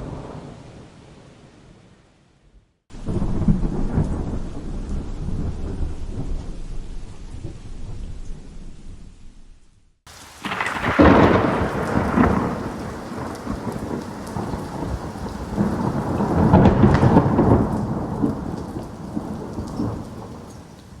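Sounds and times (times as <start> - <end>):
thunder crack and rumble: 0.0 - 0.6, 2.9 - 9.8, 10.4 - 21.0.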